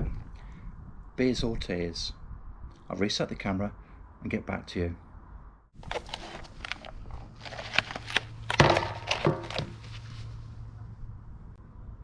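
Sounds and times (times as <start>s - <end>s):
low steady hum: 4.9s - 12.0s
camera handling knocks: 7.7s - 9.8s.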